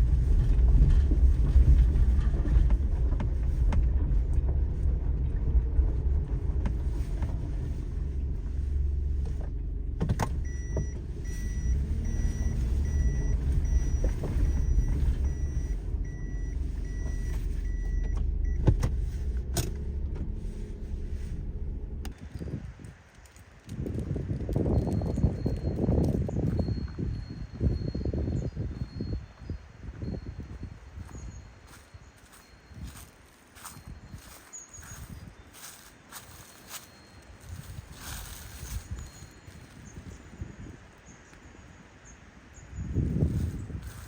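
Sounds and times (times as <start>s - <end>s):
car engine and road rumble: 0.0s - 44.0s
electronic beep: 10.4s - 18.6s.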